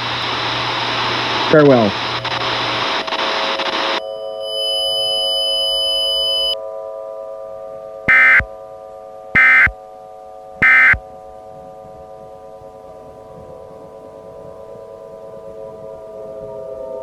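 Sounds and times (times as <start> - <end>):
buzzy data bursts: 8.1 - 8.4, 9.4 - 9.7, 10.6 - 11.0
electronic alert tone chord: 9.4 - 9.7, 10.6 - 11.0.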